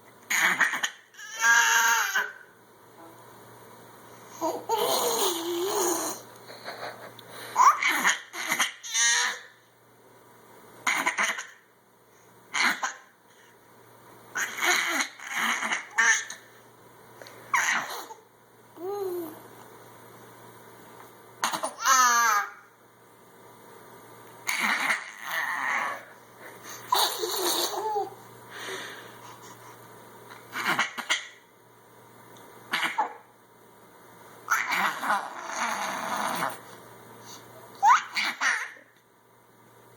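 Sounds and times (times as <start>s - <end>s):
baby making rough vocal noises: 4.4s - 6.2s, 24.5s - 26.2s, 34.5s - 36.6s
breathy sputtering vocal noises: 34.6s - 36.8s.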